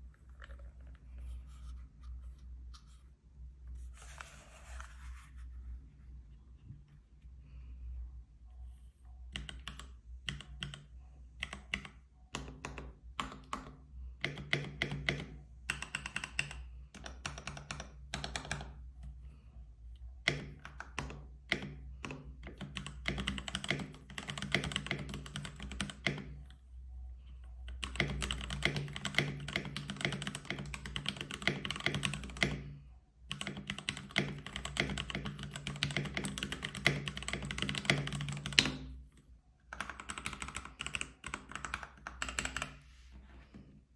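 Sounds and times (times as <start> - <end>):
mechanical keyboard typing: 9.3 - 18.8, 20.2 - 26.4, 27.6 - 32.7, 33.3 - 38.9, 39.7 - 42.8.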